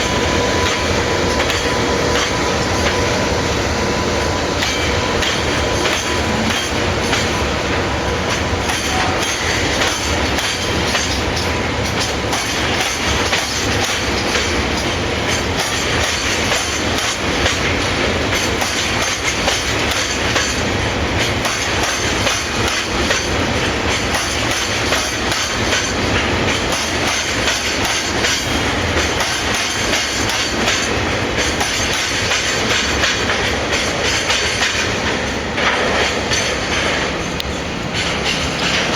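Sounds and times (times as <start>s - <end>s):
freight train wheels clattering: 0.0s - 38.9s
train wheel squeal: 0.0s - 38.9s.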